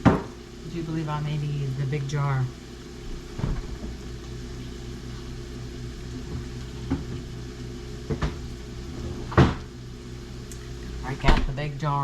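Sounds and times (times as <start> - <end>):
kitchen appliance humming: 0.0 - 12.0.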